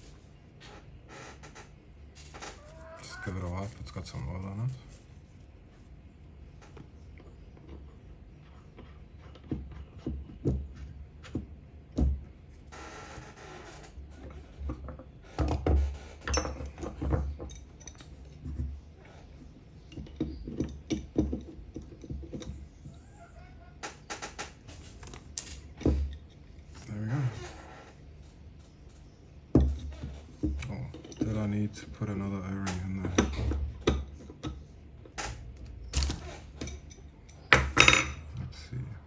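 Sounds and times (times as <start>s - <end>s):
small metal parts clicking and knocking: 14.6s - 18.7s, 32.5s - 38.2s.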